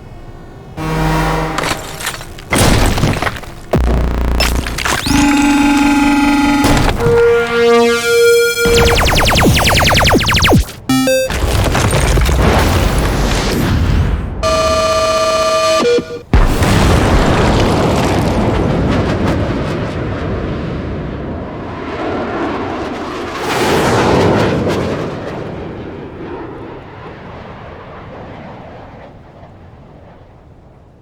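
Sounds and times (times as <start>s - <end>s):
roaring noise: 0.7s - 13.7s.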